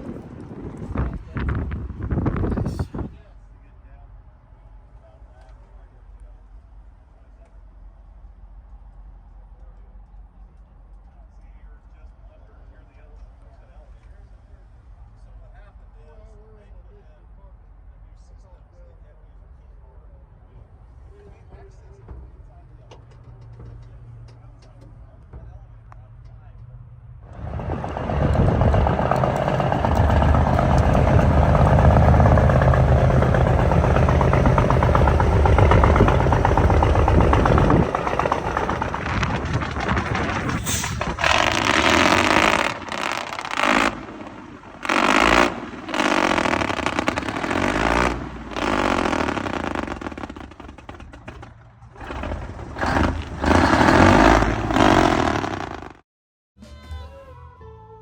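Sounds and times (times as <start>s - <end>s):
diesel truck engine running: 27.2s - 56.0s.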